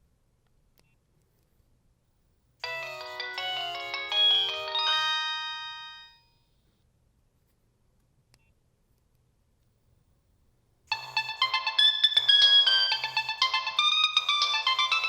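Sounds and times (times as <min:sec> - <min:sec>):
polyphonic phone ringtone: 0:02.6 - 0:06.2, 0:10.9 - 0:15.0.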